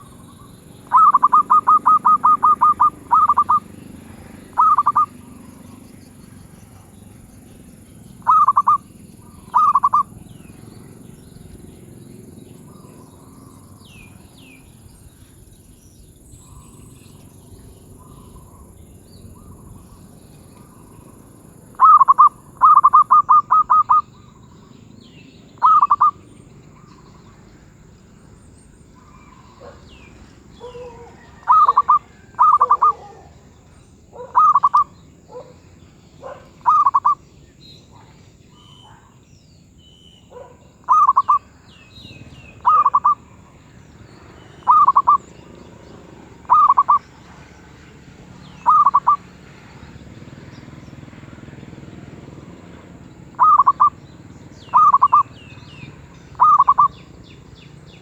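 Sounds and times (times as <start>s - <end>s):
dove cooing in staccato notes: 0.0s - 7.2s, 7.9s - 10.9s, 21.7s - 24.4s, 25.6s - 26.2s, 29.0s - 37.2s, 40.3s - 41.6s, 42.2s - 43.7s, 44.4s - 57.2s
small birds chirping: 0.0s - 58.0s.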